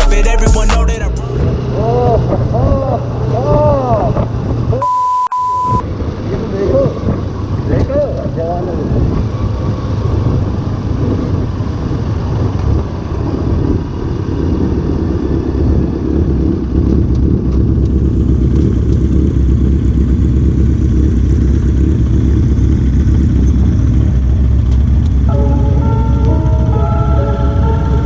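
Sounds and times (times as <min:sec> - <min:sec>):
motorcycle engine rumbling: 0:05.8 - 0:28.0.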